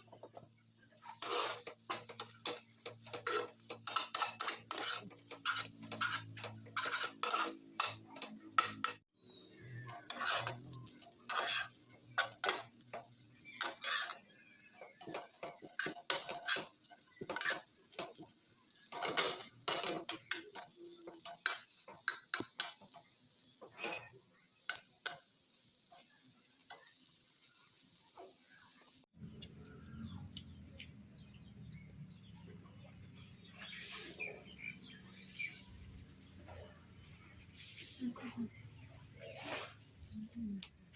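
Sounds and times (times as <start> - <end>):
cutlery clinking against a dish: 1.1 - 9.0, 9.9 - 25.3.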